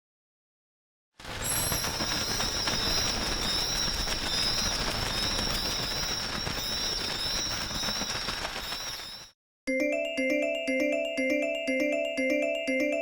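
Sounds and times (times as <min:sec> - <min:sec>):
high thin whistling tones: 0:01.5 - 0:09.3.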